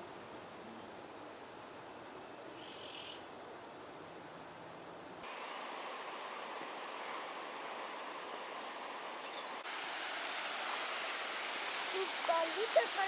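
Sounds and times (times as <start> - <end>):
waterfall rushing: 5.2 - 13.0
insect trilling: 5.3 - 9.6.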